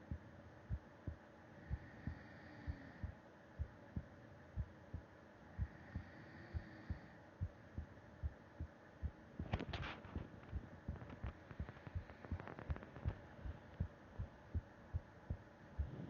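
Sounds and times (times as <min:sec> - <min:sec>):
heartbeat thumps: 0:00.0 - 0:16.0
crackling clicks: 0:09.4 - 0:13.9.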